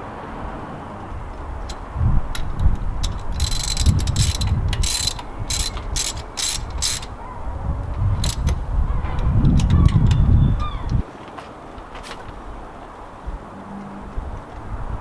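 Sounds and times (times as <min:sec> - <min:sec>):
ratchet wrench clicking: 0:01.7 - 0:07.2, 0:08.1 - 0:08.6.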